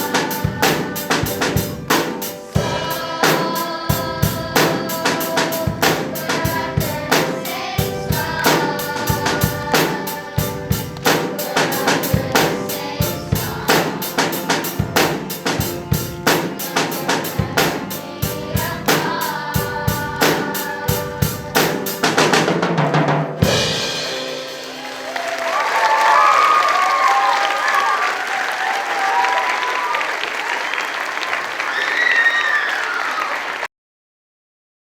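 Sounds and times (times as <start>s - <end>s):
drum kit beat: 0.0s - 25.6s
person singing: 2.6s - 15.5s
applause and cheering: 24.3s - 33.7s.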